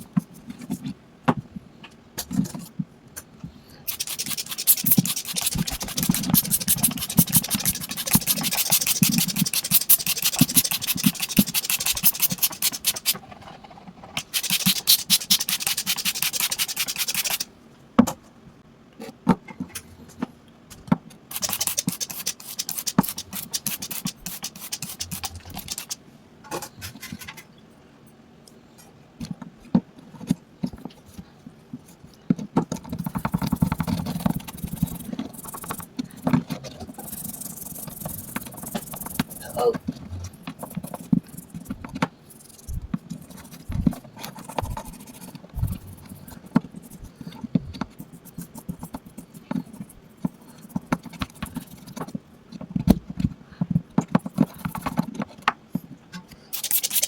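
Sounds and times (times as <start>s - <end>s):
scrubbing on a hard object: 3.9s - 17.5s, 21.3s - 26.0s, 33.0s - 52.0s, 56.6s - 57.0s.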